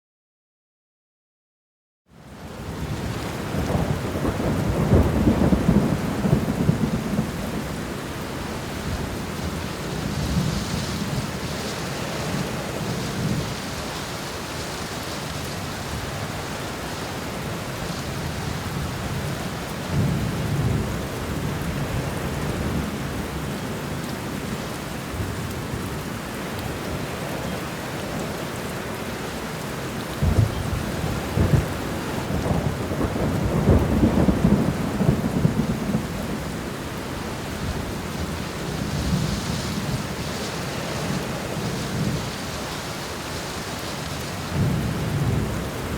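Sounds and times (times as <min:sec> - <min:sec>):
steady rain: 0:02.1 - 0:45.9
rolling thunder: 0:02.7 - 0:07.7, 0:30.2 - 0:36.7, 0:44.4 - 0:45.9.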